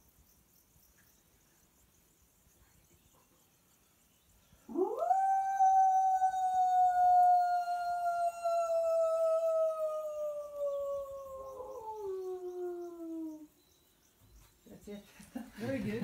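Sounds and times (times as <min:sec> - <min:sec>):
person imitating wolf howl: 0:04.7 - 0:13.5.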